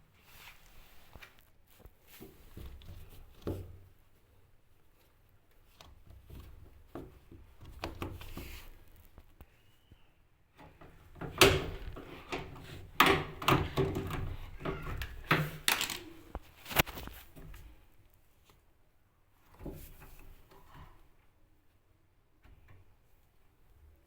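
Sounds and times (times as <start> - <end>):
objects handled and set down: 10.6 - 17.8.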